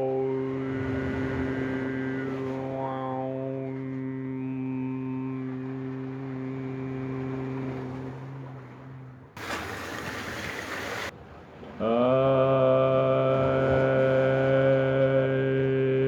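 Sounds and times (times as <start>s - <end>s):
man chanting low drone: 0.0s - 8.3s, 11.8s - 16.0s.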